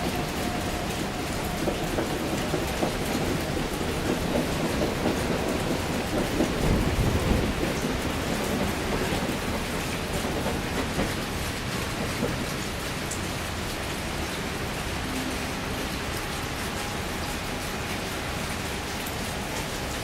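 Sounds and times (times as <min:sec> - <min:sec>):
heavy rain falling: 0:06.2 - 0:08.2
low rumble: 0:06.5 - 0:08.0.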